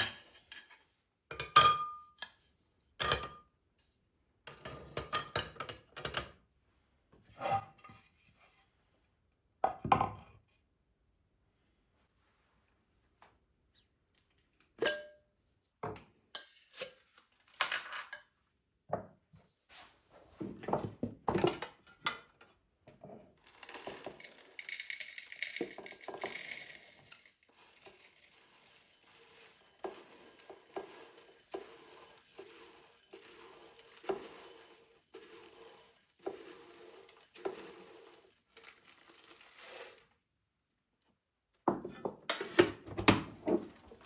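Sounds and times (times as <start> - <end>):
dishes and cutlery clinking: 23.5 - 38.7.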